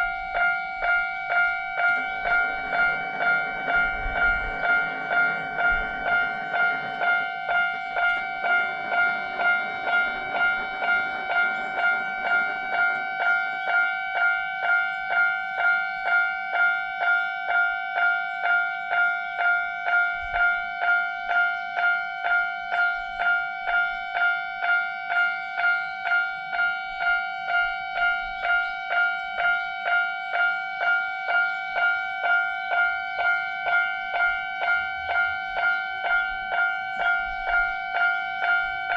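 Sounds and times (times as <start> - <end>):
level crossing warning bell: 0.0 - 38.9.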